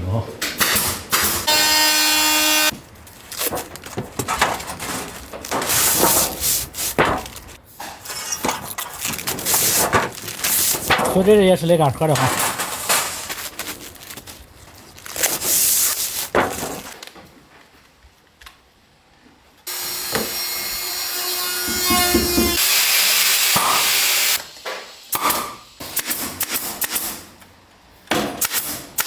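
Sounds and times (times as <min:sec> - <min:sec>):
power tool running: 0:01.5 - 0:02.8, 0:19.7 - 0:25.7
scraping: 0:21.3 - 0:22.6
tools knocking on wood: 0:21.6 - 0:22.6.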